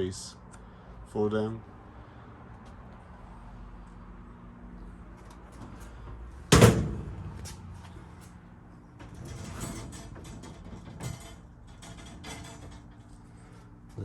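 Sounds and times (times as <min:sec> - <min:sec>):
steel cabinet door banging shut: 0:06.5 - 0:07.6.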